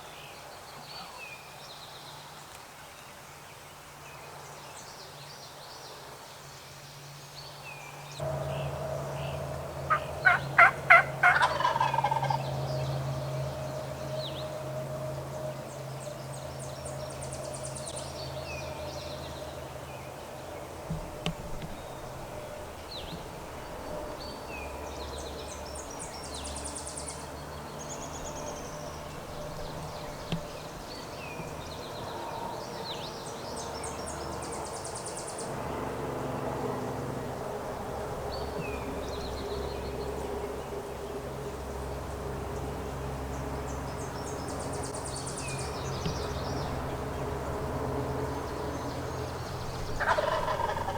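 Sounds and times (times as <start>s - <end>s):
low outdoor hum: 7.0s - 50.9s
songbird trilling: 44.0s - 47.0s.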